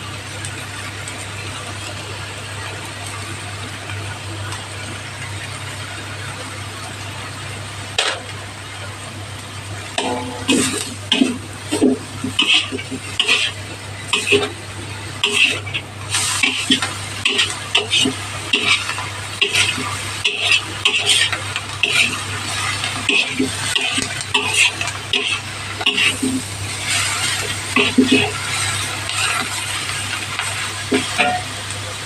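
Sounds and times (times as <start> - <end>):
food sizzling: 0.0 - 32.0
utensil scraping frying pan: 9.9 - 31.6.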